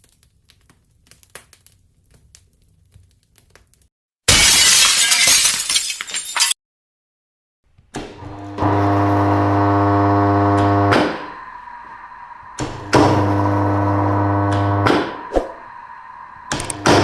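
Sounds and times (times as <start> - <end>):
contactor click: 8.0 - 17.0
electric motor humming: 8.0 - 17.0.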